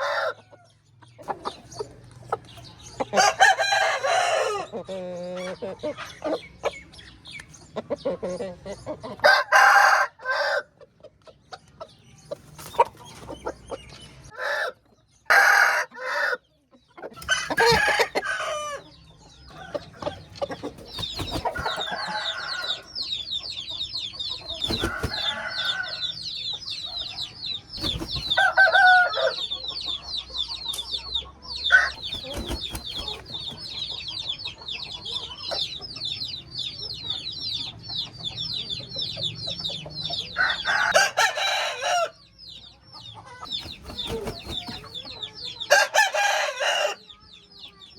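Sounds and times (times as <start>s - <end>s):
roosters crowing: 0.0s - 0.6s, 3.1s - 5.1s, 9.2s - 10.7s, 14.3s - 16.4s, 17.2s - 18.9s, 19.5s - 23.3s, 24.5s - 26.2s, 27.8s - 29.4s, 31.7s - 33.7s, 40.4s - 42.2s, 43.5s - 45.0s, 45.7s - 47.0s
hens clucking: 1.0s - 9.7s, 15.3s - 27.0s, 27.7s - 30.1s, 31.3s - 35.6s, 43.2s - 46.9s
rapid high chirps: 20.8s - 22.0s.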